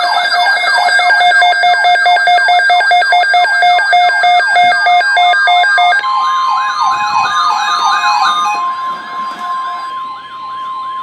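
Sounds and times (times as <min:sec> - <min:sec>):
steady high tones: 0:00.0 - 0:11.0
two-pitch fast beeping: 0:00.0 - 0:11.0
downward sweeping siren tone: 0:06.0 - 0:11.0.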